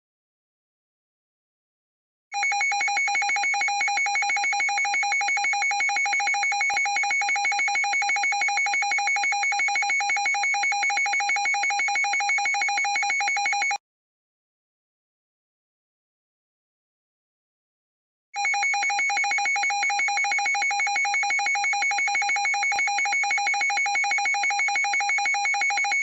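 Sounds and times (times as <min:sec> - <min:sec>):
pulsing two-tone alarm: 0:02.4 - 0:13.8, 0:18.4 - 0:26.0.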